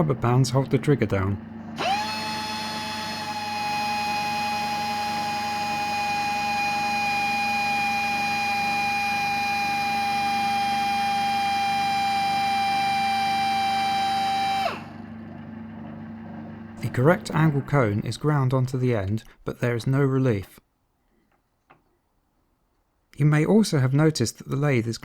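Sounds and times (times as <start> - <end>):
air die grinder whining: 0.0 - 18.2.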